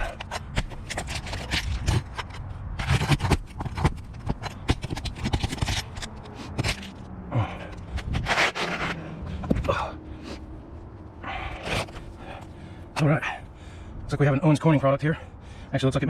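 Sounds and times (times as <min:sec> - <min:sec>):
shingles scraping on roof: 0:00.2 - 0:06.9, 0:08.0 - 0:09.1.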